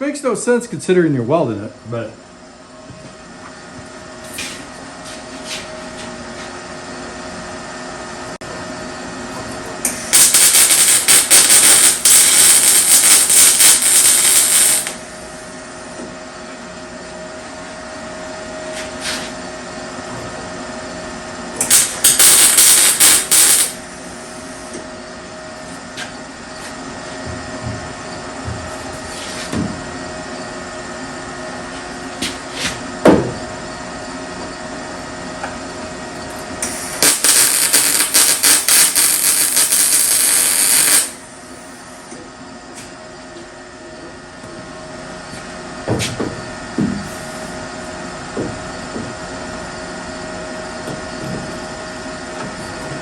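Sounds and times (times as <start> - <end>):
steady hum: 0.0 - 53.0
welding arc crackling: 9.9 - 15.1, 21.6 - 23.8, 36.6 - 41.3.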